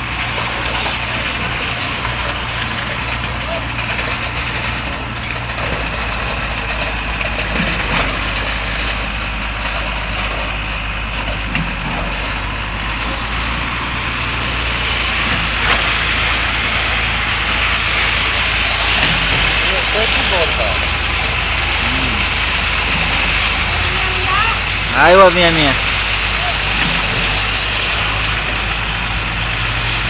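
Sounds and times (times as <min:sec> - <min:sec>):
truck engine running: 0:00.0 - 0:30.0.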